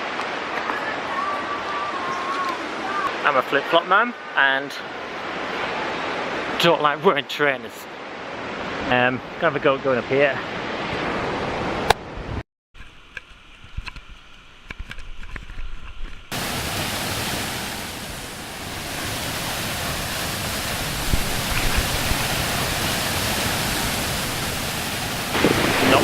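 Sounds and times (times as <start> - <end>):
waterfall roaring: 0.0 - 4.4, 16.3 - 26.0.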